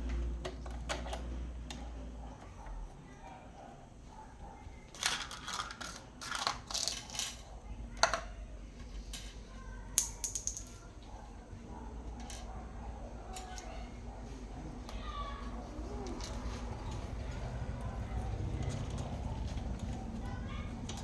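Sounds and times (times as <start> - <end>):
small hard parts clattering: 4.8 - 11.1.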